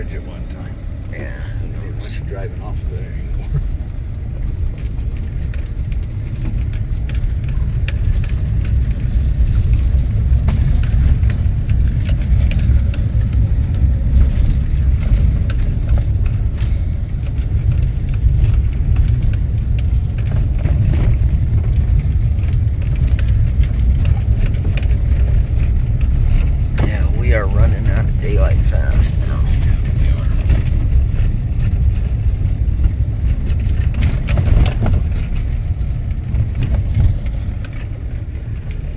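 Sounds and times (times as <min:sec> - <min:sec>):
road and engine rumble: 0:00.0 - 0:38.9
knocks and rattles: 0:04.5 - 0:38.9.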